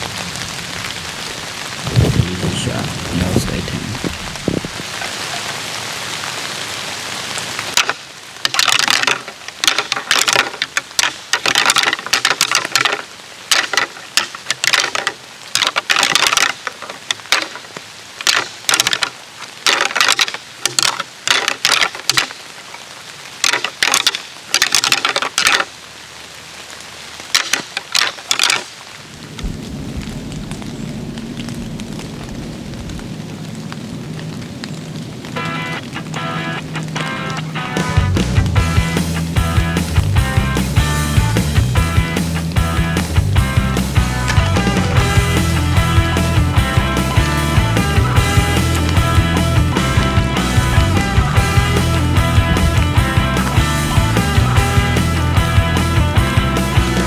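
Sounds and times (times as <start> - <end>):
crackling patters: 0.0 - 57.0
rain falling: 0.0 - 57.0
low steady music tones: 36.2 - 57.0.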